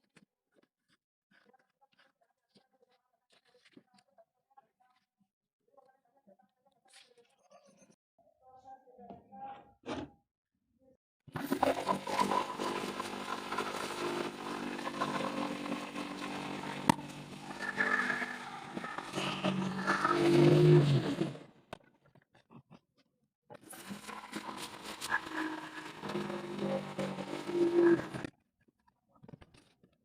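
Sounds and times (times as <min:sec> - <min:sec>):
electric woodworking power tool: 0:11.4 - 0:21.4, 0:23.6 - 0:28.3.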